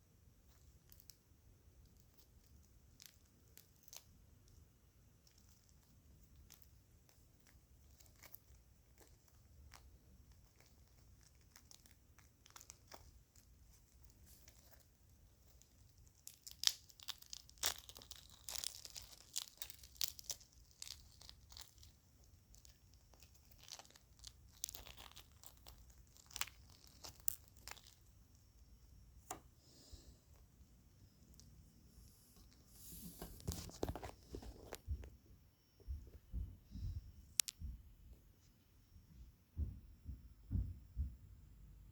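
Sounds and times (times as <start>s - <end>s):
eggshell cracking and crushing: 0.4s - 29.5s.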